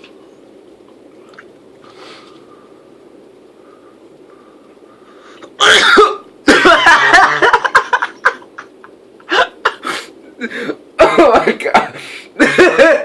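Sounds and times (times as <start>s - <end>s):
man sneezing: 5.6s - 6.3s
man coughing: 5.6s - 7.6s, 9.3s - 13.0s.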